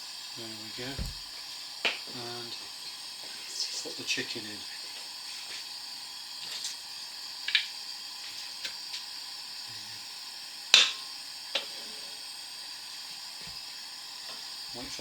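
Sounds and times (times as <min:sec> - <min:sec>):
frying pan hiss: 0:00.0 - 0:15.0.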